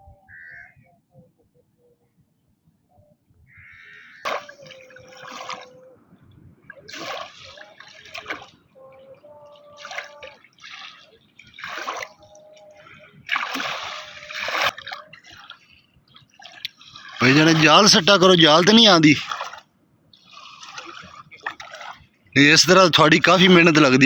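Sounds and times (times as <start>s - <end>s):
water splashing: 4.2s - 6.0s, 6.6s - 24.0s.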